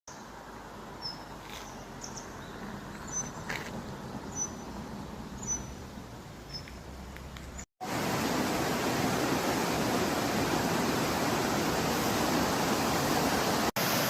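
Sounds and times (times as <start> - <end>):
small bird chirping: 1.0 - 3.6, 4.2 - 4.8, 5.4 - 6.9.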